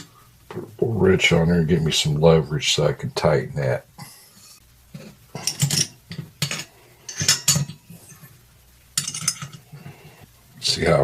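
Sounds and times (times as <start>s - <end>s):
metal tools clinking and scraping: 4.4s - 8.3s, 9.0s - 9.7s.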